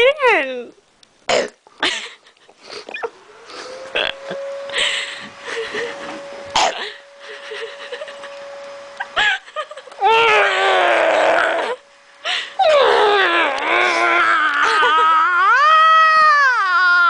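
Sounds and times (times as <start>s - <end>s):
dog howling: 10.0s - 11.8s, 12.6s - 17.0s.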